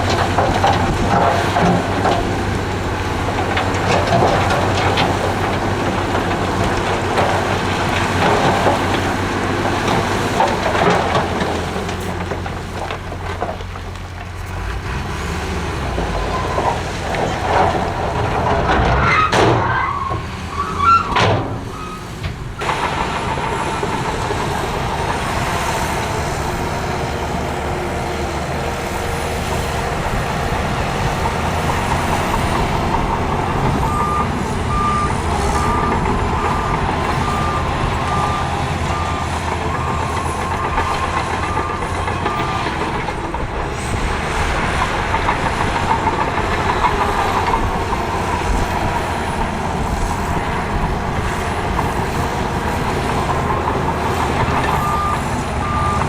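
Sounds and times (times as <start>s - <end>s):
diesel machinery running: 0.0s - 56.0s
squeals and metal clanks: 16.2s - 24.6s, 31.6s - 44.9s.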